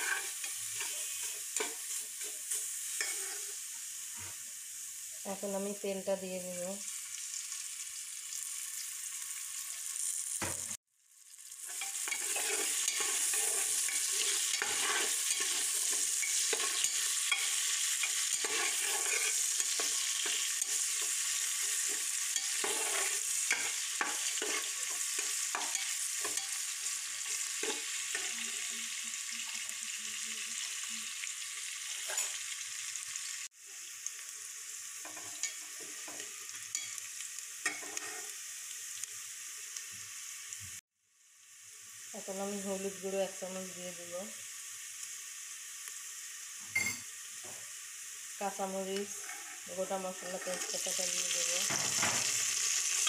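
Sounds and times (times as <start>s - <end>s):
spatula scraping a pan: 0.0s - 4.4s, 11.6s - 28.8s, 37.6s - 38.4s, 49.0s - 53.0s
onion sizzling in hot oil: 0.0s - 53.0s.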